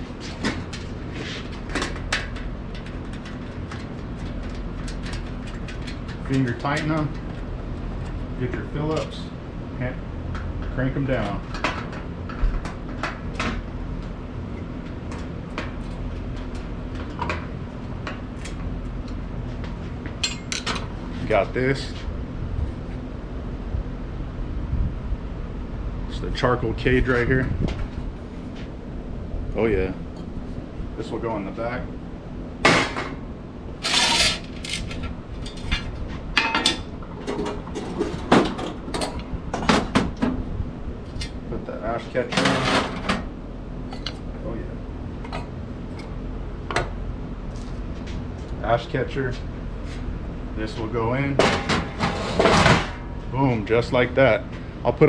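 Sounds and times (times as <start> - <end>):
steady low hum: 0.0 - 55.0
metal scraping rattle: 33.8 - 36.0, 51.4 - 53.0
metal clanking and rattling: 51.4 - 53.1.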